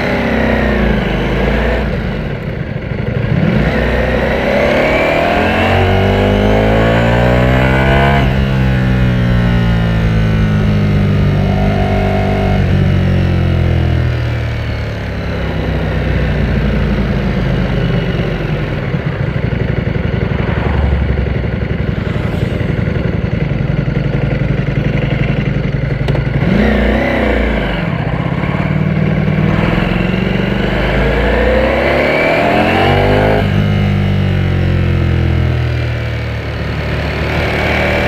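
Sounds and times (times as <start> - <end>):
motorcycle engine revving: 0.0 - 38.0.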